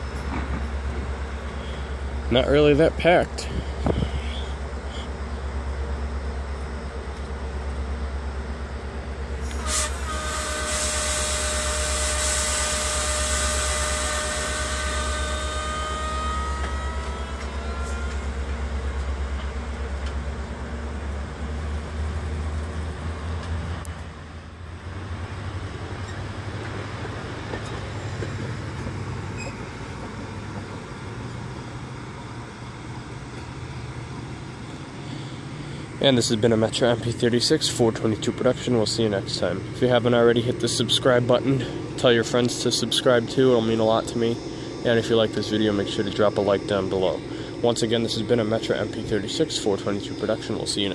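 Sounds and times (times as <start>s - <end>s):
diesel locomotive drone: 0.0s - 50.9s
multi-tone squeal: 9.4s - 18.8s, 29.3s - 30.0s, 42.6s - 50.9s.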